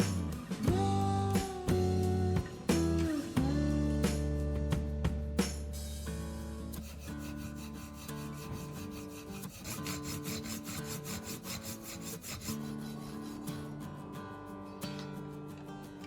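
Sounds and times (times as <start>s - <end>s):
guitar music: 0.0s - 16.0s
metal being filed by hand: 6.7s - 13.8s.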